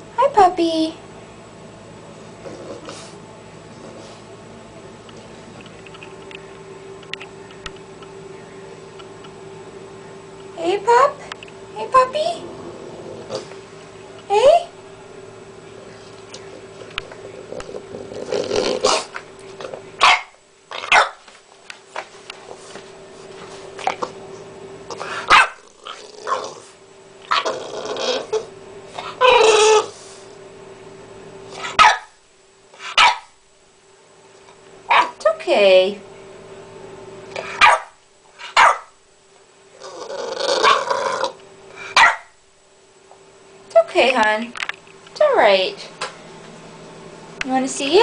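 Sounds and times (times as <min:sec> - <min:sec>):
puppy coughing: 0:17.2 - 0:19.2.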